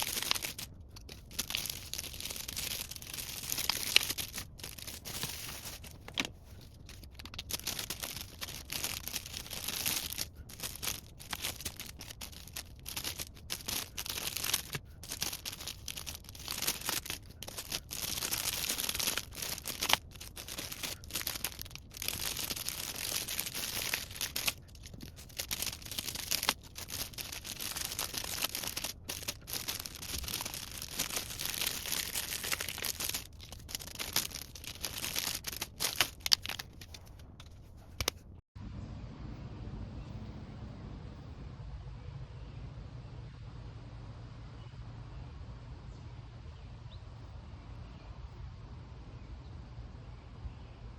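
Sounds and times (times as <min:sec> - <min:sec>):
material rustling and tearing: 0:00.0 - 0:38.2.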